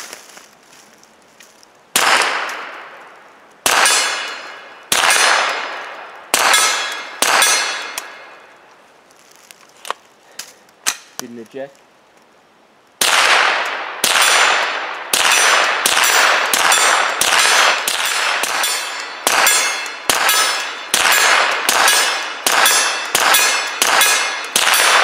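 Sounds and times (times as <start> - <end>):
rifle shots: 1.9 - 3.0, 3.6 - 8.3, 13.0 - 25.0
steel target ringing: 6.4 - 8.4, 15.2 - 25.0.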